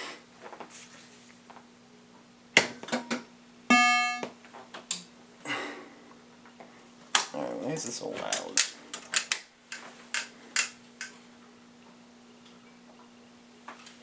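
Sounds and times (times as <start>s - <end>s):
electrical hum: 0.0s - 14.0s
buzzy electronic tone: 3.7s - 4.3s.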